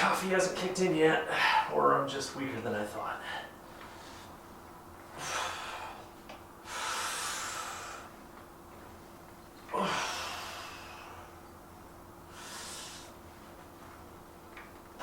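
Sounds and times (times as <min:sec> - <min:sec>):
man breathing hard: 0:05.1 - 0:08.2, 0:09.7 - 0:11.5, 0:12.3 - 0:13.2
man grunting: 0:09.7 - 0:10.4.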